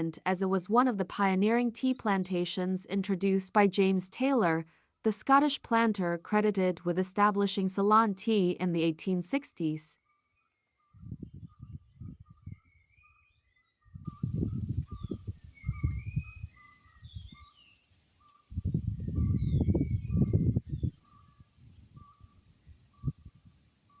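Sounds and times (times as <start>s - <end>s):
birds chirping: 9.6s - 24.0s.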